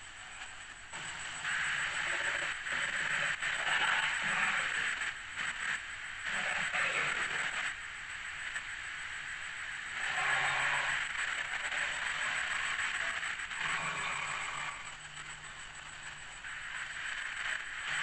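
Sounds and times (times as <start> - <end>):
breathy hissing dinosaur growl: 2.0 - 4.9, 10.0 - 15.0.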